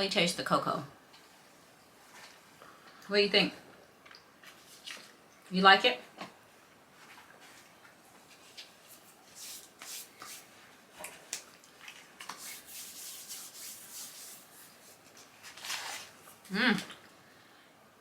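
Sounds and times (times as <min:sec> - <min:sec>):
snack packaging rustling: 0:15.0 - 0:16.4.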